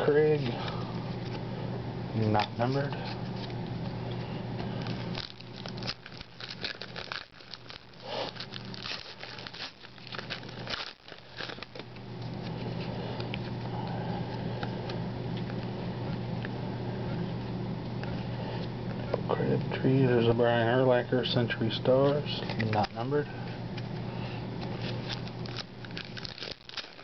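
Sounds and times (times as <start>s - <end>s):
trading cards rustling and flicking: 2.3s - 15.7s, 22.0s - 24.0s, 24.6s - 27.0s.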